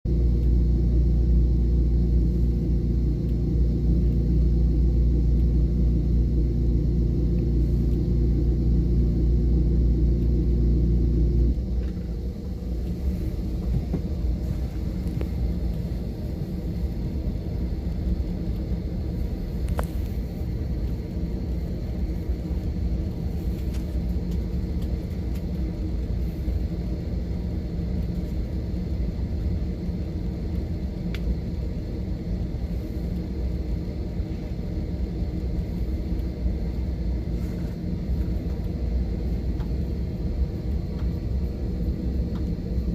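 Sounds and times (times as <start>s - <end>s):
engine rumble: 0.0s - 42.9s.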